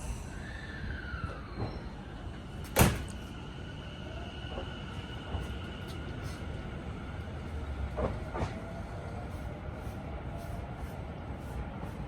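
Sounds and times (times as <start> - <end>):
train sliding doors shutting: 0.0 - 9.0.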